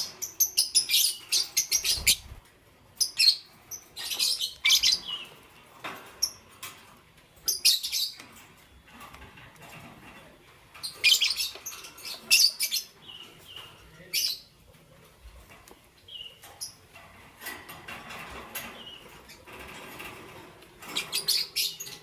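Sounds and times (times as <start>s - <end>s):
lovebirds chirping: 0.0s - 5.5s, 10.8s - 14.6s, 15.7s - 16.8s, 20.8s - 22.0s.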